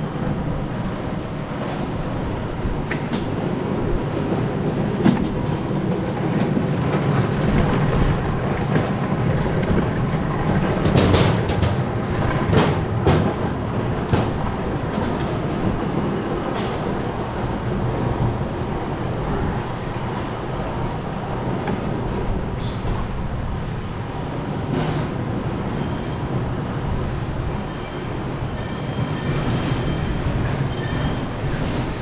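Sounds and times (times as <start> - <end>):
factory machinery clattering: 4.6 - 17.1.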